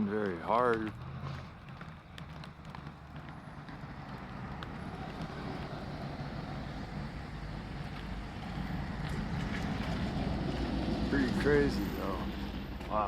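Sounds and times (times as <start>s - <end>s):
distant thunder rumbling: 3.3s - 12.7s.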